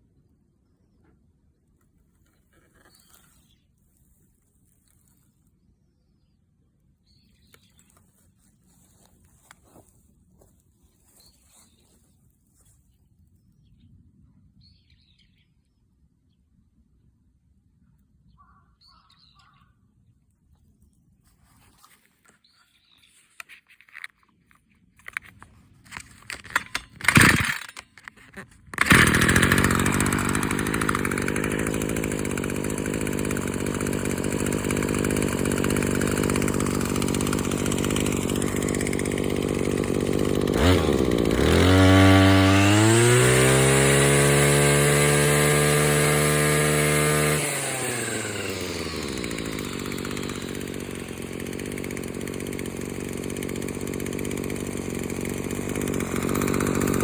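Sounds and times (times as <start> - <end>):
brush cutter engine revving: 25.1 - 57.0.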